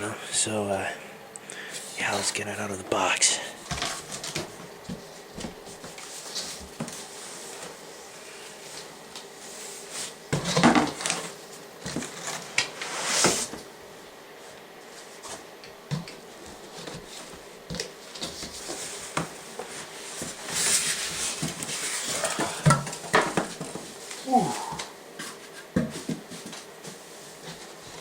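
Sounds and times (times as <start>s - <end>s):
cardboard box rustling and knocking: 24.7s - 28.0s.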